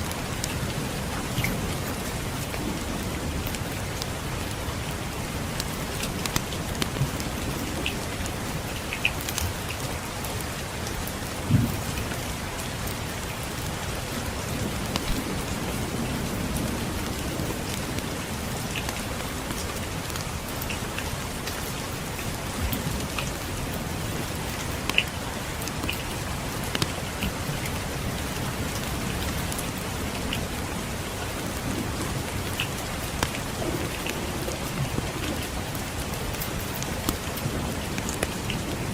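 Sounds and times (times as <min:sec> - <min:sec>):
rain pattering: 0:00.0 - 0:38.9
distant thunder rumble: 0:11.3 - 0:21.4.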